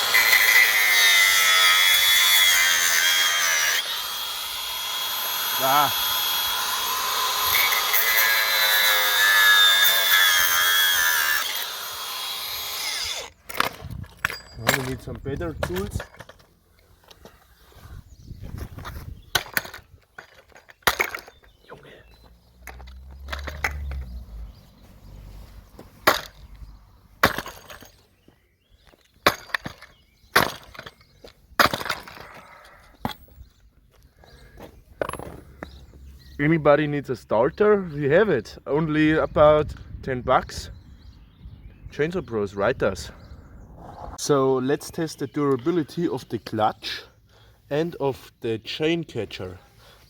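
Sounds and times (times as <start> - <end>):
power tool whining: 0.0 - 14.0.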